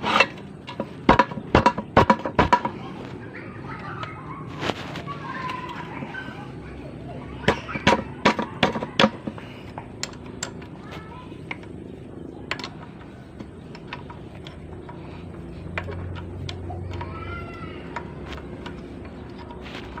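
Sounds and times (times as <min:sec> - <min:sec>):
tools and parts clicking: 0:00.0 - 0:02.8, 0:07.8 - 0:10.8, 0:11.4 - 0:11.8, 0:12.4 - 0:20.0.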